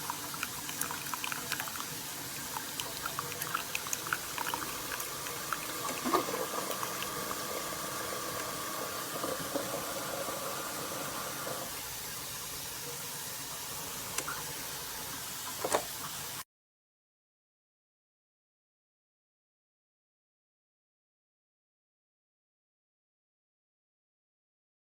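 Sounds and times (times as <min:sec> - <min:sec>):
liquid streaming into cup: 0:00.0 - 0:16.2
coffee maker pump hum: 0:00.0 - 0:16.4.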